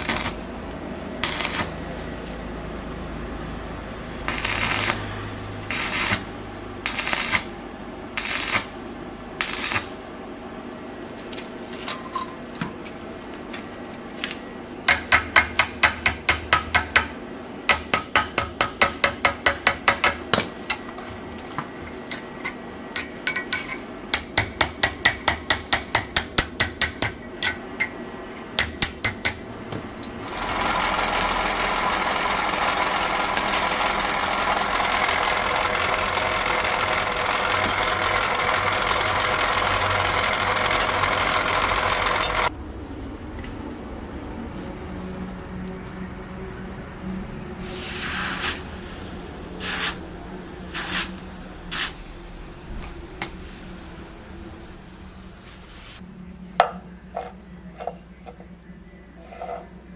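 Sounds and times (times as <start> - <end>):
hammer striking iron on anvil: 14.9 - 20.8, 22.4 - 29.8.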